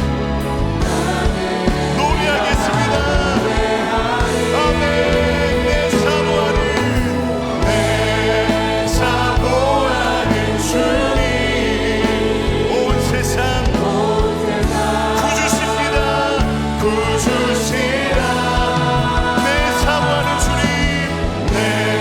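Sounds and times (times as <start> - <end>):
live band playing: 0.0 - 22.0
praise team singing worship song: 0.0 - 22.0.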